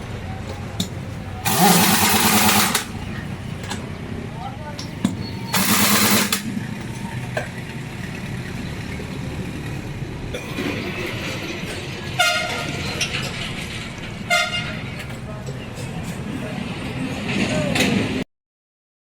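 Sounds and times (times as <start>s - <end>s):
low engine rumble: 0.0s - 18.2s
vehicle horn toots: 12.2s - 12.8s, 14.3s - 14.9s.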